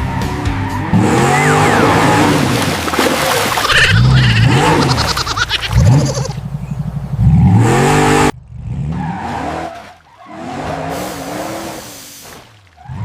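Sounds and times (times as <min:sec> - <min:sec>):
vehicle engine revving: 0:00.7 - 0:03.5, 0:05.6 - 0:12.0.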